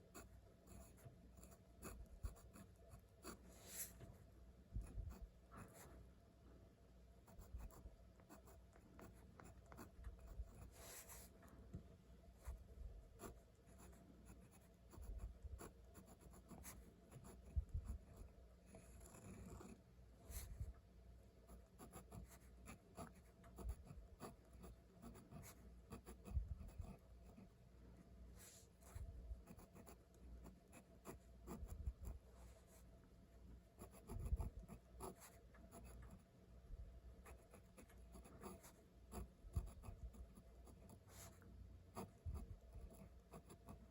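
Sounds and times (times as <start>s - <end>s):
pen scratching on paper: 0.1s - 4.1s, 7.3s - 11.3s, 13.2s - 20.6s, 21.5s - 27.5s, 28.4s - 32.2s, 33.8s - 36.2s, 37.2s - 41.4s, 42.0s - 43.9s.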